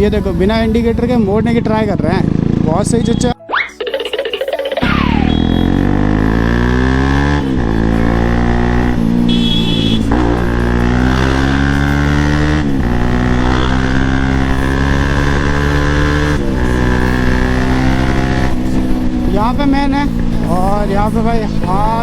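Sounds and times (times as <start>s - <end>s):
motorcycle engine revving: 0.0s - 3.4s, 4.8s - 22.0s
short high horn beep: 5.0s - 6.5s, 8.0s - 11.8s.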